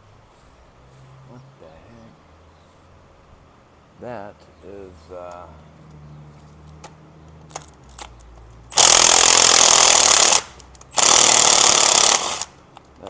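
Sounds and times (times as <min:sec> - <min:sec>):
power tool bursts: 0:08.7 - 0:12.6.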